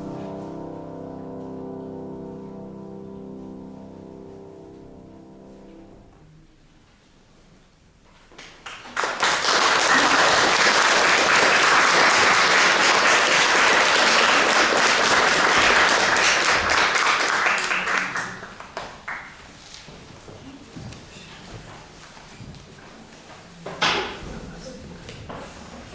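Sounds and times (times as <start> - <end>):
audience applauding: 8.6 - 19.4.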